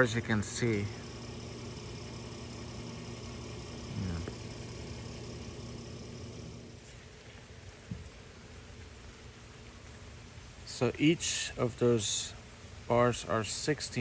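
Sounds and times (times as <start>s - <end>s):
vehicle engine idling: 0.0s - 7.0s.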